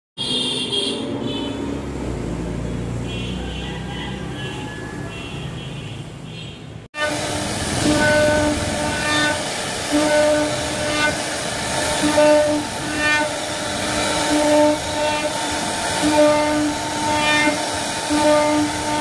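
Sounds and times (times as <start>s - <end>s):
wood router whine and cutting hiss: 7.0s - 19.0s.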